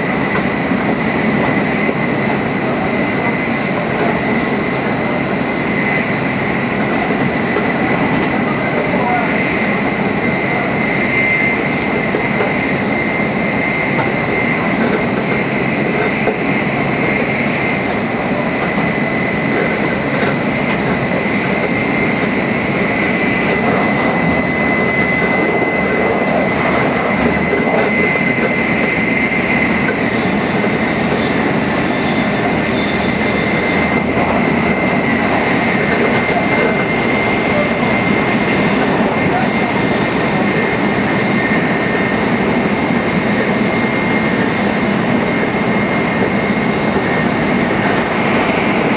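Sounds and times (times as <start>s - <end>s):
high-speed train rushing: 0.0s - 48.9s
thin high whine: 0.9s - 14.8s, 18.6s - 25.1s, 39.3s - 48.9s.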